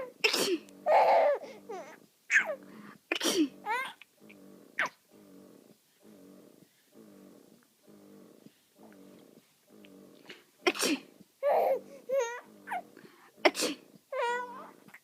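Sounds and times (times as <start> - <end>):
person sneezing: 0.2 - 0.7, 3.1 - 3.5, 10.7 - 11.1, 13.4 - 13.9
baby laughing: 0.8 - 2.6, 11.4 - 12.5, 14.2 - 14.7.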